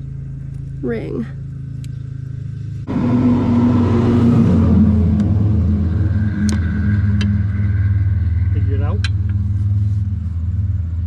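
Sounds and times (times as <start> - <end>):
rushing noise: 2.8 - 11.0.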